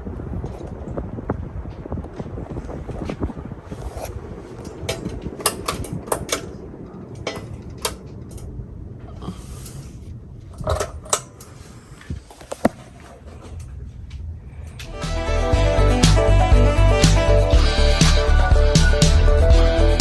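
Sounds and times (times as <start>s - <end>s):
ceiling fan whirring: 0.0s - 16.8s
sharp clicks and clatter: 4.1s - 8.5s, 10.5s - 11.6s.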